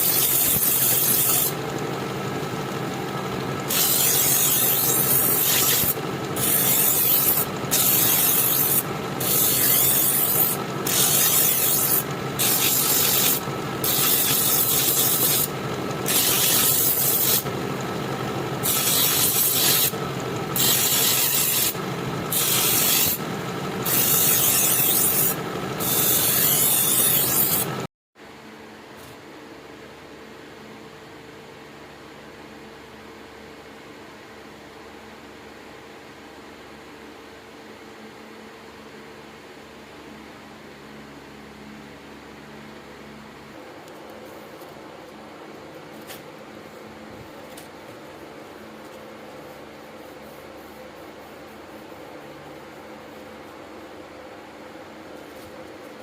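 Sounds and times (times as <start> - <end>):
filing a steel knife blade: 0.0 - 1.6, 3.7 - 17.5, 18.6 - 20.0, 20.6 - 27.7
steady hum: 0.0 - 33.8, 38.8 - 56.0.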